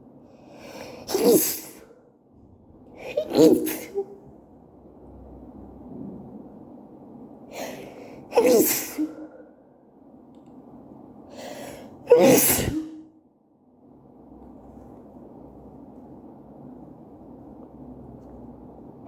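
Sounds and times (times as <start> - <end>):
woman sneezing: 1.0 - 1.9, 3.0 - 4.2, 7.6 - 9.4, 12.0 - 13.1.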